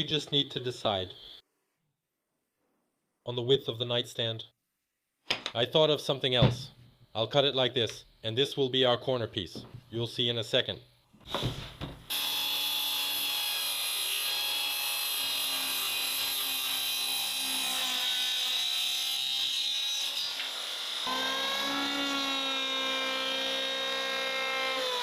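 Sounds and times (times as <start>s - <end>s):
power saw cutting wood: 12.1s - 25.0s.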